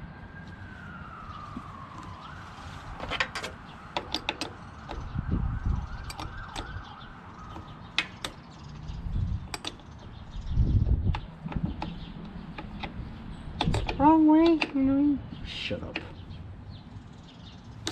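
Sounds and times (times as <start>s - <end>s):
distant siren wailing: 0.0s - 9.2s
sharp clicks and knocks: 3.0s - 15.0s, 15.8s - 16.3s.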